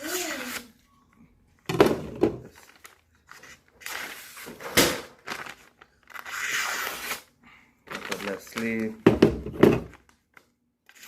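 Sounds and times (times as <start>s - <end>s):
paper rustling: 2.4s - 6.6s, 7.9s - 9.0s.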